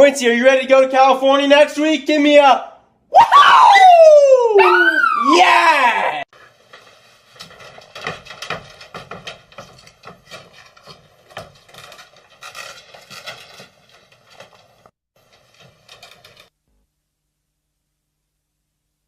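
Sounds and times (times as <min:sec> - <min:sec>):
scraping rubbing and knocking: 0:06.3 - 0:16.5.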